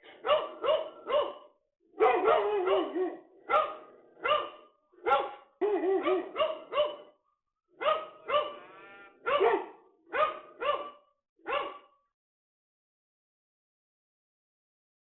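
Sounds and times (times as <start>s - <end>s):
dog barking: 0.0s - 7.2s, 7.8s - 12.0s.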